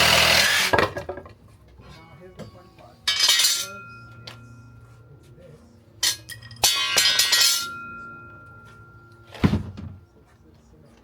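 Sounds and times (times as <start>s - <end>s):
hard objects clattering: 0.0s - 1.4s
faint ringing tone: 3.7s - 5.9s.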